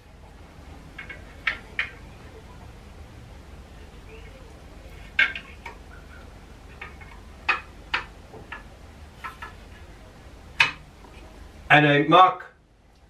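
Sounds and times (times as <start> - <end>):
level clicking and knocking: 0.8 - 2.0, 6.7 - 9.6.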